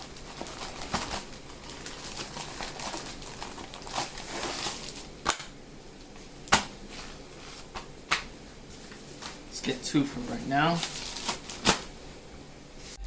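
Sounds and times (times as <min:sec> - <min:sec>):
plastic bag crinkling: 0:00.0 - 0:05.1, 0:10.7 - 0:11.9.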